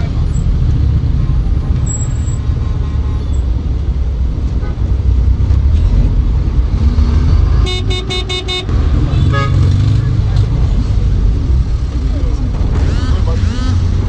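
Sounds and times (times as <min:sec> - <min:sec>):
minibus engine rumbling: 0:00.0 - 0:14.0
road traffic rumbling: 0:00.0 - 0:14.0
vehicle horn short toots: 0:07.6 - 0:09.6.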